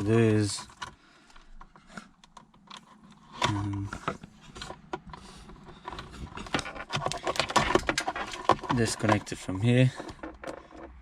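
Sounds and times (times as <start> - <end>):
plastic connectors clicking and rattling: 3.4 - 11.0.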